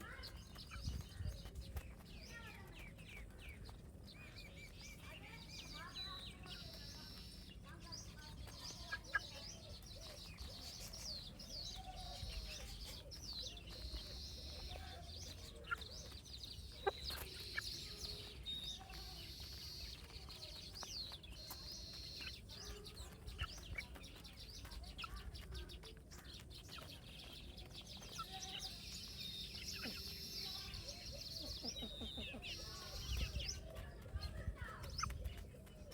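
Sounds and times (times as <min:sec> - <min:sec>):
baby chicks peeping: 0:00.0 - 0:35.9
hen clucking: 0:12.0 - 0:26.0, 0:28.0 - 0:34.0.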